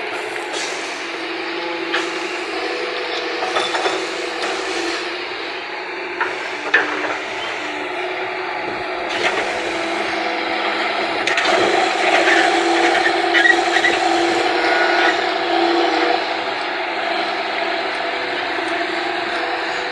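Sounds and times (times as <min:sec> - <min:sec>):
diesel earthmoving machinery running: 0:00.0 - 0:19.9.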